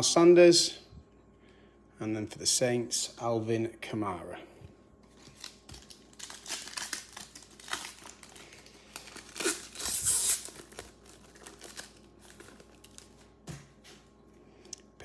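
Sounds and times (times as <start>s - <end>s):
plastic packaging crinkling: 5.1s - 14.0s.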